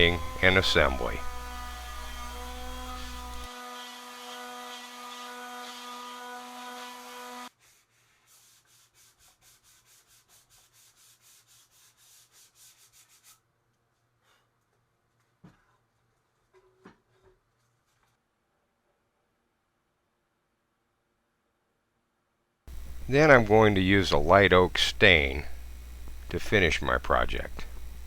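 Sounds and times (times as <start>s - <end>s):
electric sander motor running: 0.0s - 3.5s, 22.7s - 26.4s, 27.4s - 28.0s
hand sanding on wood: 7.5s - 13.4s.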